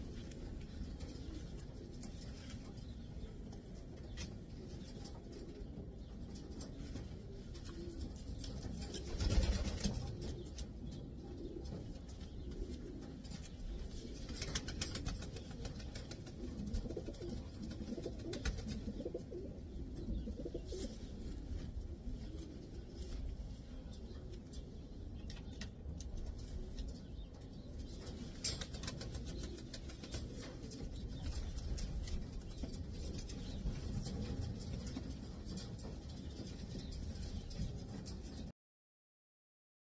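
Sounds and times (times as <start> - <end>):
pigeons cooing: 0.0 - 24.8.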